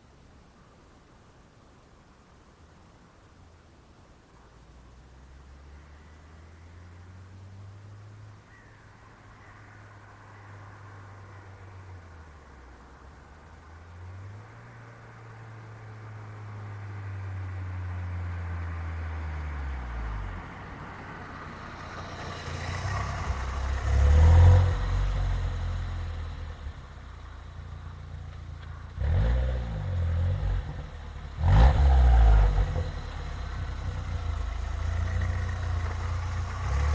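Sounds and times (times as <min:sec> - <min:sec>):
car engine revving: 0:19.2 - 0:36.9.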